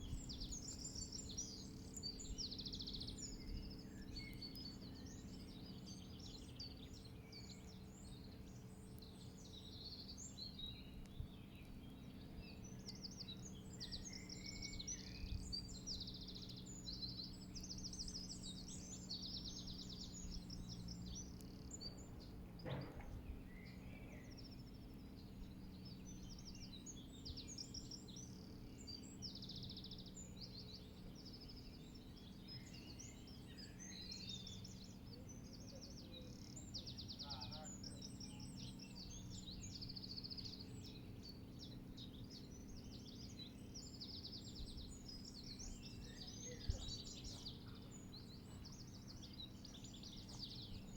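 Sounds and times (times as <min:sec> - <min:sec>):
low background rumble: 0:00.0 - 0:50.9
songbirds chirping and trilling: 0:00.0 - 0:50.9.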